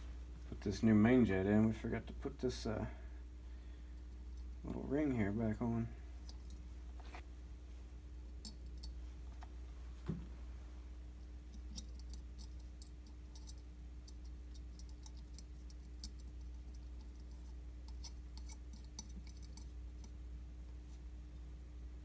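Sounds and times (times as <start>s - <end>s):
steady low hum: 0.0s - 22.0s
small metal parts clicking: 11.5s - 20.1s.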